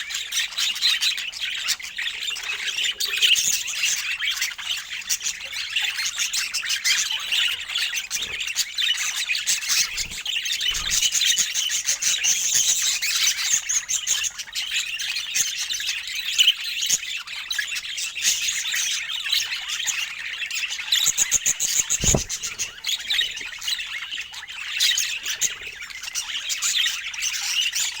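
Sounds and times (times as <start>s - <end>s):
budgerigars chattering and warbling: 0.0s - 28.0s
dull thump: 21.7s - 22.7s.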